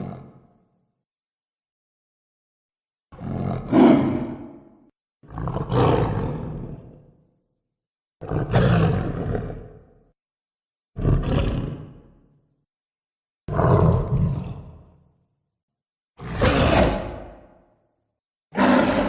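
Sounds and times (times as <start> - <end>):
animal roar: 3.1 - 7.1, 8.2 - 10.0, 11.0 - 12.2, 13.5 - 15.0, 16.2 - 17.7, 18.5 - 19.0.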